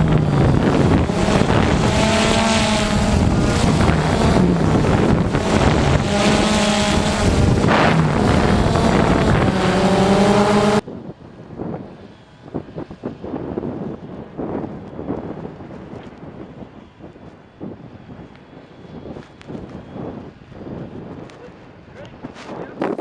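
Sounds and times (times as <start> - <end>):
vehicle engine revving: 0.0 - 10.8
wind noise on microphone: 0.0 - 23.0.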